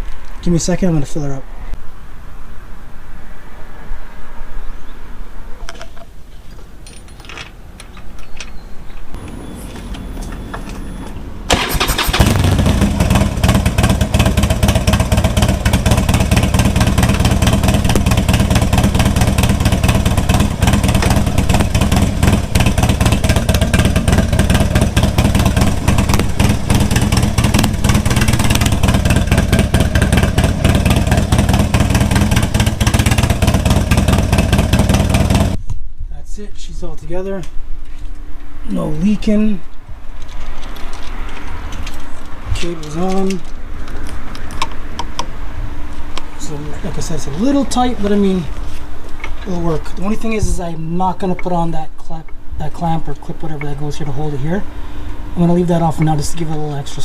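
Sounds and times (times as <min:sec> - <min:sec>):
motorcycle engine idling: 0:09.2 - 0:35.6.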